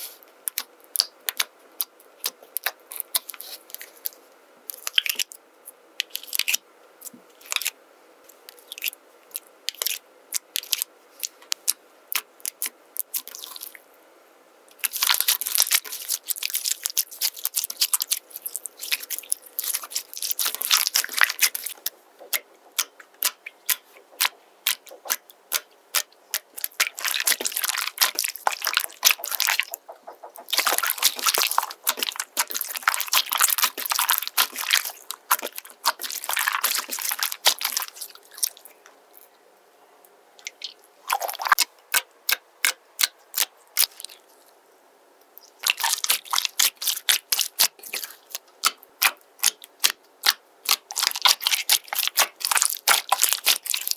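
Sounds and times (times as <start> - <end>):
slime squeezed with wet clicks: 0.4 - 4.1, 4.7 - 5.4, 8.5 - 13.8, 14.7 - 38.7, 45.4 - 53.9.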